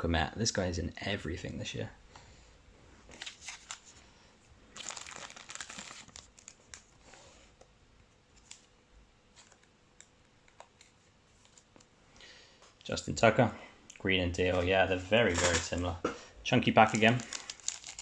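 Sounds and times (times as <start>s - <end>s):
cards being handled: 3.1s - 3.9s, 9.3s - 11.9s
foil wrapper crinkling: 3.2s - 3.9s, 4.7s - 7.0s, 15.2s - 15.8s, 16.8s - 18.0s.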